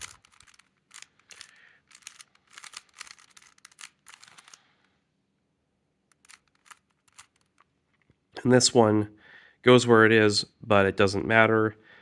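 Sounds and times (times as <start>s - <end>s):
plastic puzzle cube clicking: 0.0s - 4.6s, 6.1s - 8.1s.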